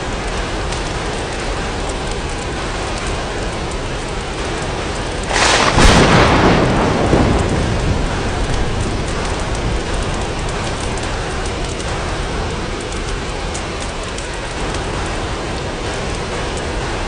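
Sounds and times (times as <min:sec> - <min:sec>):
steady rain: 0:00.0 - 0:17.0
thunder clap rumbling: 0:00.0 - 0:17.0.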